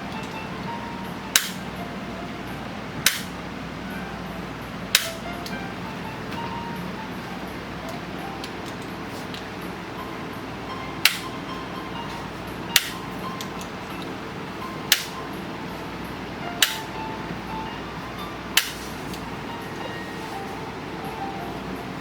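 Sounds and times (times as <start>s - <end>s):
background music: 0.0s - 22.0s
chiropractic adjuster clicks: 1.4s - 1.6s, 3.0s - 3.3s, 5.0s - 5.6s, 11.0s - 11.3s, 12.8s - 13.7s, 14.9s - 15.2s, 16.6s - 16.9s.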